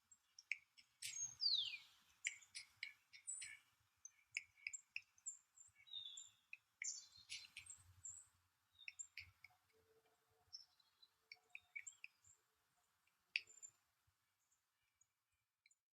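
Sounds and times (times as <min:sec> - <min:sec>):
faint bird chirps and calls: 0:00.0 - 0:15.8.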